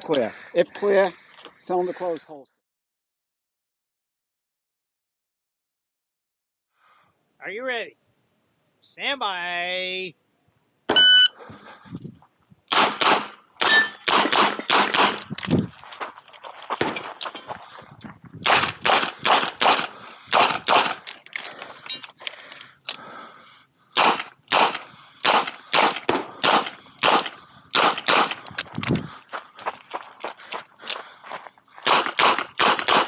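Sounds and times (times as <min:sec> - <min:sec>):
revolver gunshots: 0:12.7 - 0:15.2, 0:18.4 - 0:21.0, 0:24.0 - 0:28.4, 0:31.9 - 0:33.0.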